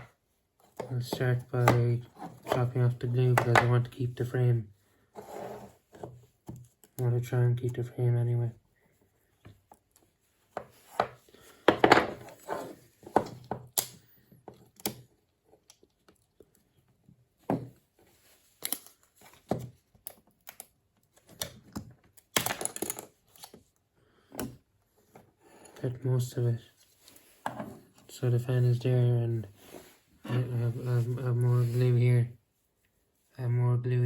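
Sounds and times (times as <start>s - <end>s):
glue cracking and snapping: 18.6s - 23.6s.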